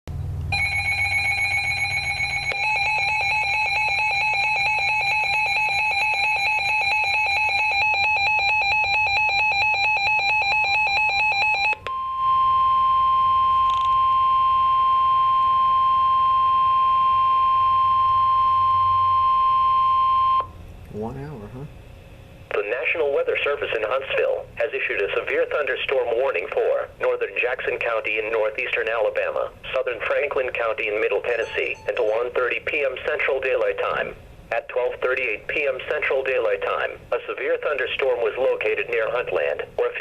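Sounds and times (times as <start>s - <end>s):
pulsing electronic alarm: 0.5s - 20.5s, 31.4s - 32.3s
steady high alert tone: 31.3s - 32.4s.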